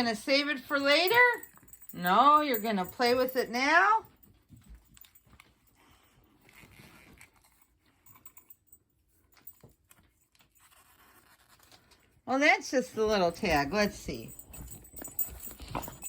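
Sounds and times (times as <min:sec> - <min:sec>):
puppy playing with plush toy: 0:00.0 - 0:08.2, 0:09.3 - 0:16.0.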